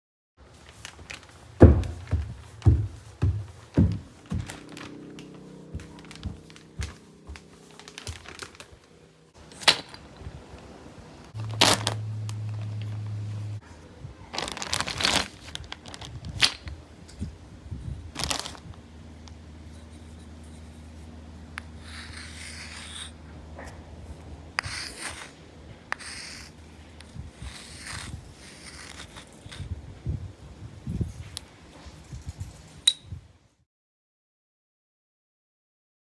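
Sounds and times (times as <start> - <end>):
chalk tapping: 1.6 - 4.7, 24.6 - 25.3, 25.9 - 29.6
chalk scraping on hard surface: 19.7 - 23.2, 24.6 - 29.7.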